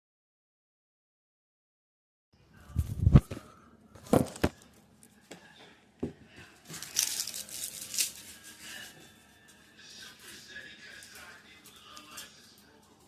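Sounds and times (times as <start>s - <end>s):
papery crinkling and tearing: 6.7s - 8.9s.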